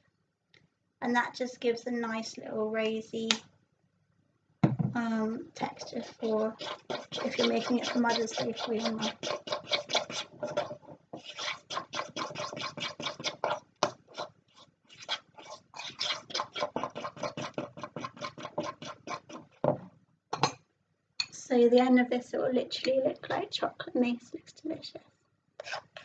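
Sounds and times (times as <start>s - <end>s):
batter mixed in a bowl: 5.0s - 19.8s, 25.6s - 26.0s.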